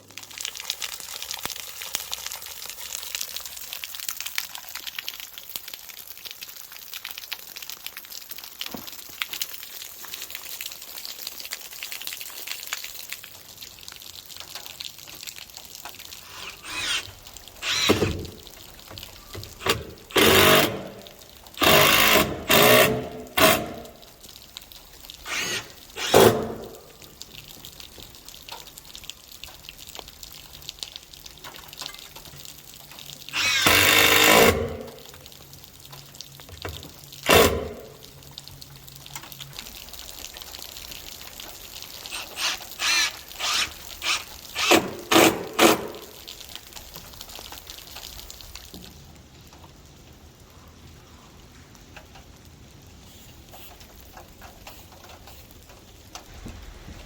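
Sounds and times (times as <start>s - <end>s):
oscillating multi-tool cutting sheet metal: 16.3s - 18.2s, 19.6s - 20.9s, 25.3s - 26.5s, 42.1s - 45.7s.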